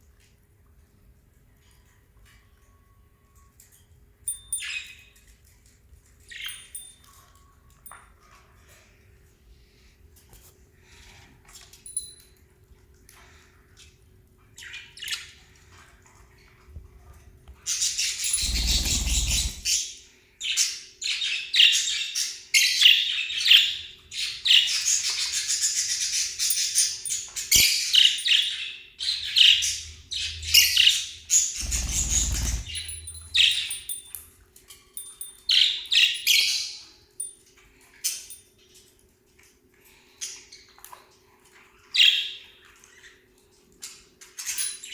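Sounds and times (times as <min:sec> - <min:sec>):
parrots chirping and squawking: 0:17.6 - 0:20.0, 0:20.6 - 0:34.1.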